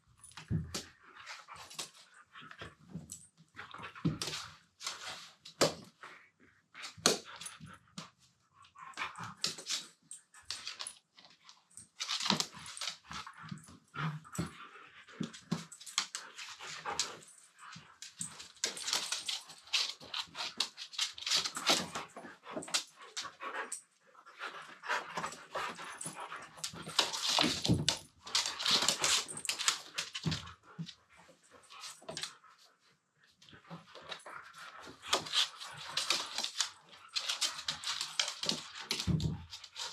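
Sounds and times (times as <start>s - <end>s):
dogs scuffling: 15.2s - 23.8s, 24.5s - 30.9s, 33.6s - 39.9s.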